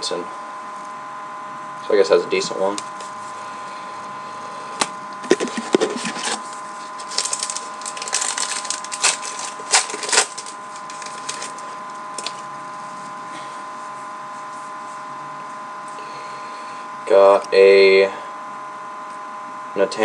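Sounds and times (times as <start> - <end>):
steady hum: 0.0 - 20.0
card pack crackling: 4.8 - 12.5.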